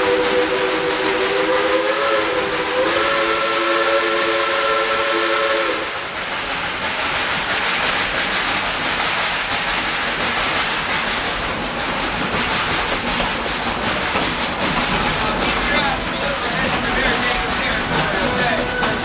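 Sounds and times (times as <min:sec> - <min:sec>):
steam whistle: 0:00.0 - 0:06.1
steam train running: 0:00.0 - 0:19.0.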